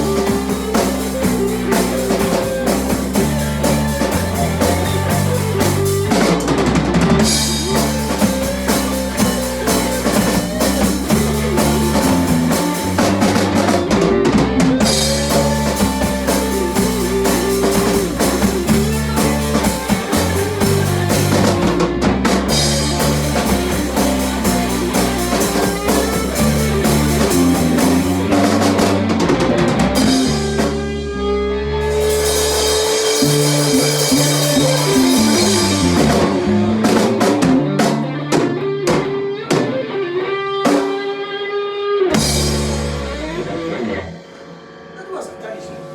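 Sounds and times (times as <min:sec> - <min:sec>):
rock band music: 0:00.0 - 0:45.9.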